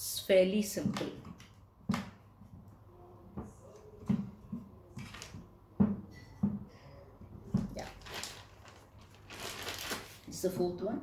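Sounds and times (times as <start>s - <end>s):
plastic knocks and clicks: 0.8s - 6.7s.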